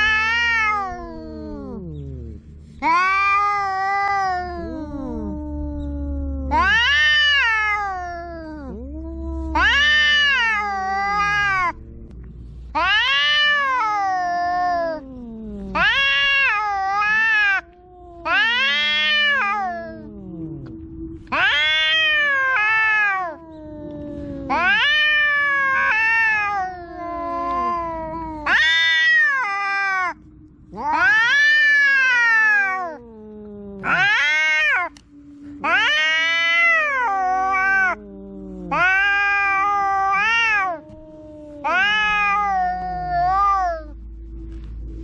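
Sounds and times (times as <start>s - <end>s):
cat meowing loudly: 0.0s - 1.9s, 2.8s - 11.8s, 12.8s - 35.0s, 35.6s - 44.0s.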